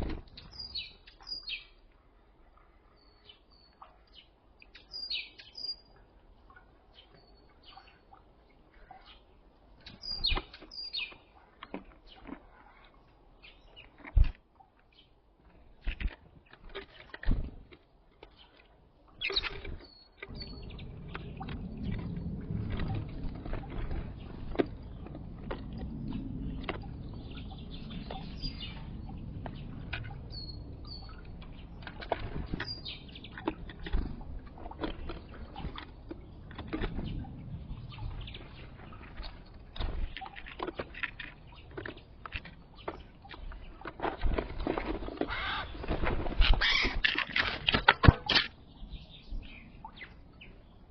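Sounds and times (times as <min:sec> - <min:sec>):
birds pecking and landing: 0:15.6 - 0:48.5
high bird chirps: 0:19.2 - 0:20.9
low rumble: 0:20.2 - 0:40.2.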